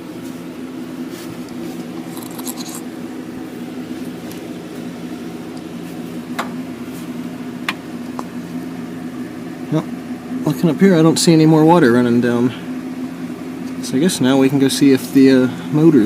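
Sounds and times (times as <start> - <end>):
low mechanical hum: 0.0 - 16.0
faint handling clicks and scrapes: 1.0 - 3.0.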